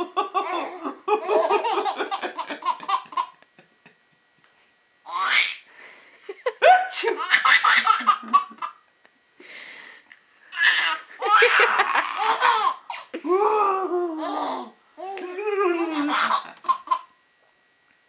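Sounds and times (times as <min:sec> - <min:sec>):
baby laughing: 0:00.3 - 0:03.4, 0:05.1 - 0:05.6, 0:06.9 - 0:08.8, 0:10.6 - 0:13.0, 0:14.2 - 0:17.1.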